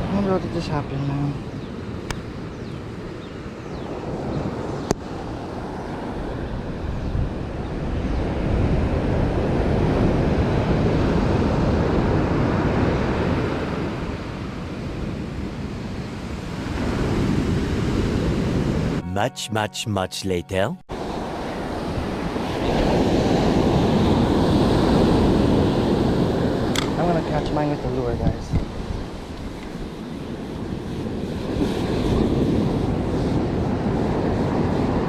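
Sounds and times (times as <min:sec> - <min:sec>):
ocean surf washing on shore: 0:00.0 - 0:19.0, 0:20.9 - 0:35.0
wind buffeting microphone: 0:00.0 - 0:19.0, 0:20.9 - 0:35.0
sharp click: 0:26.7 - 0:27.0.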